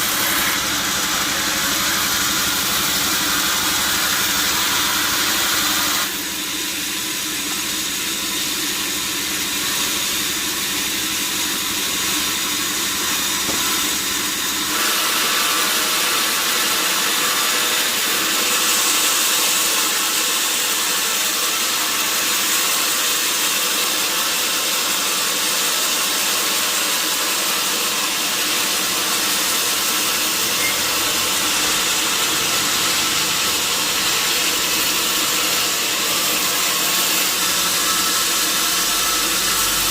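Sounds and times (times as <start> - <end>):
sawmill saw machine drone: 0.0 - 39.9.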